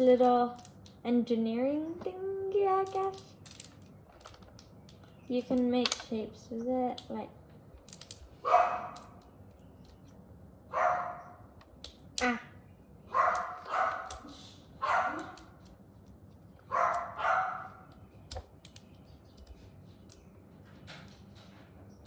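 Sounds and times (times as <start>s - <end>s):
small toy clicking: 0.0s - 1.0s, 2.8s - 6.2s, 7.8s - 8.3s, 17.9s - 20.3s
dog barking: 8.4s - 9.0s, 10.7s - 11.4s, 13.1s - 15.5s, 16.7s - 17.8s.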